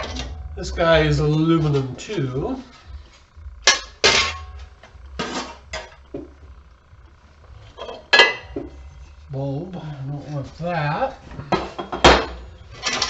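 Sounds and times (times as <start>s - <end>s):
metal parts clanking: 12.0s - 13.0s.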